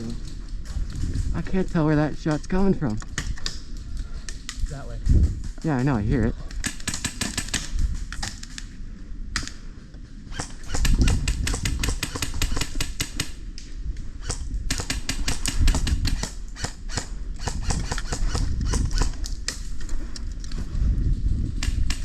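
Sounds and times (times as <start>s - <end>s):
low rumble: 0.0s - 6.6s
airsoft guns firing: 6.5s - 8.6s, 10.3s - 13.5s, 14.2s - 19.7s, 21.6s - 22.0s.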